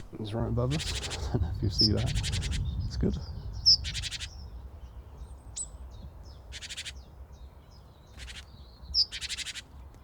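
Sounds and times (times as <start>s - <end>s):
songbird rattling trills: 0.7s - 4.6s, 6.5s - 7.0s, 8.1s - 9.7s
thin high bird chirps: 8.1s - 9.7s.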